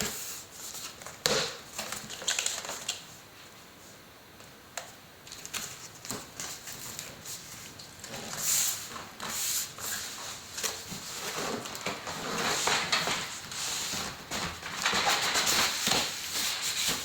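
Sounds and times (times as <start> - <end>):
cardboard and plastic rustling: 5.3 - 17.0.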